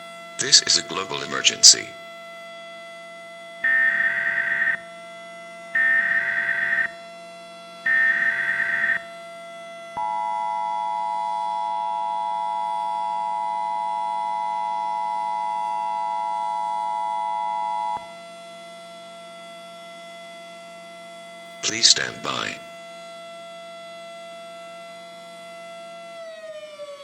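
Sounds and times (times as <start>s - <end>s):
electrical hum: 0.4s - 2.0s, 21.6s - 22.7s.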